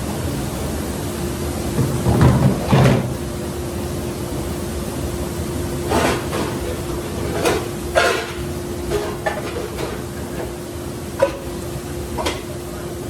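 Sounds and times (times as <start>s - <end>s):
kitchen machinery hum: 0.0s - 13.0s
dishes and utensils clanking: 5.9s - 10.6s, 11.2s - 12.6s.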